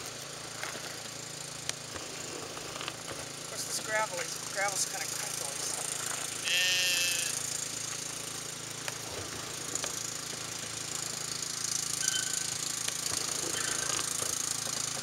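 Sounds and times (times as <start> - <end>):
sheep bleating: 6.4 - 7.5.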